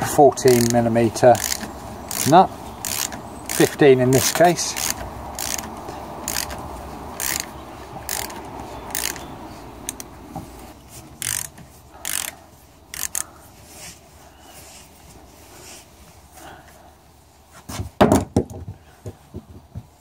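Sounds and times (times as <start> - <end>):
ratchet wrench clicking: 0.5 - 6.6, 7.2 - 10.1, 11.2 - 13.3.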